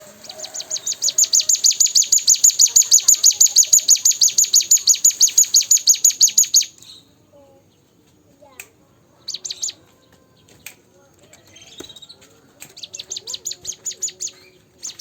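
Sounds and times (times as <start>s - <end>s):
bird chirping rapidly: 0.0s - 7.1s, 9.2s - 9.8s, 12.8s - 15.0s.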